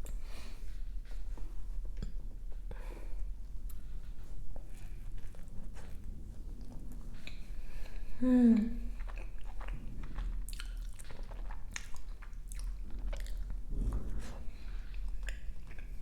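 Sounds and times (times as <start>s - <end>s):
person humming: 8.2s - 8.8s
person chewing crunchy food: 8.8s - 16.0s.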